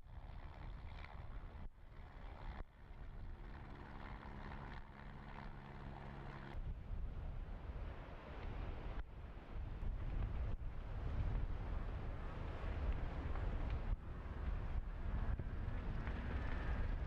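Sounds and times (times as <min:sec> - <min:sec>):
wind rumble on microphone: 0:00.0 - 0:05.6, 0:06.4 - 0:17.0
engine hum: 0:00.0 - 0:06.6, 0:12.4 - 0:17.0.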